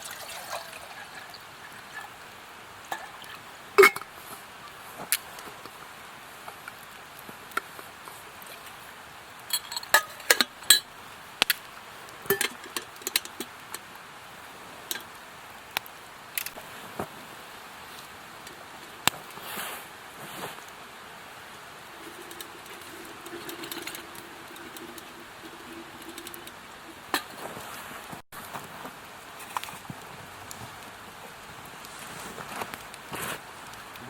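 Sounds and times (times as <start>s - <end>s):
cookware and utensils clinking: 3.8s - 4.2s, 9.5s - 10.9s, 12.2s - 13.7s, 21.9s - 27.7s.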